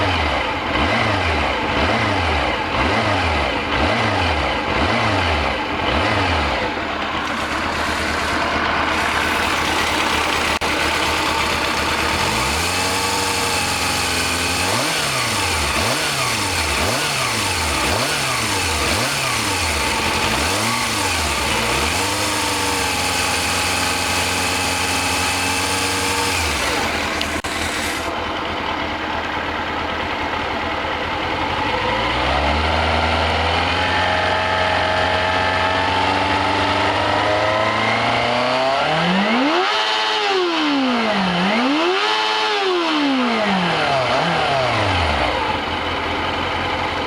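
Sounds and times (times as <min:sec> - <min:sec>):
motorcycle engine revving: 0:00.0 - 0:47.0
engine whirring noise: 0:05.8 - 0:22.2, 0:23.8 - 0:28.6.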